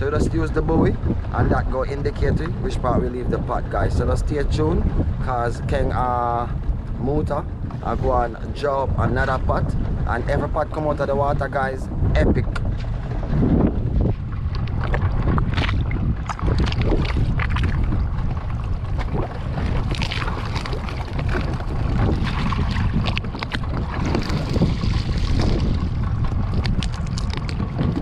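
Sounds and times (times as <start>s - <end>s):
boat motor rumbling: 0.0s - 28.0s
wind buffeting the microphone: 0.0s - 28.0s
hull splashing on water: 12.5s - 28.0s.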